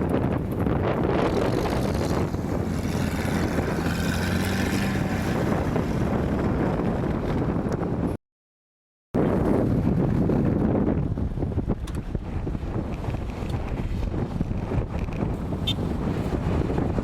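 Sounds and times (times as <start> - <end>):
off-road vehicle engine running: 0.0 - 8.2
wind buffeting microphone: 0.0 - 8.2, 9.2 - 17.0.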